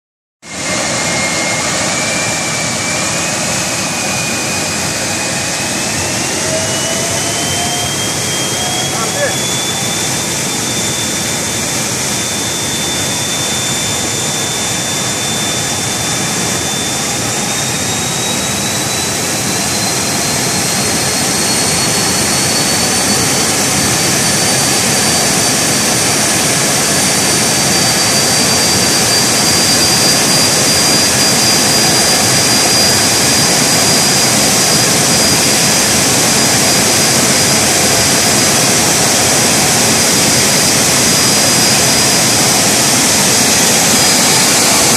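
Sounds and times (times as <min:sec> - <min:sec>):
compressor air rush with whine: 0:00.4 - 0:44.9.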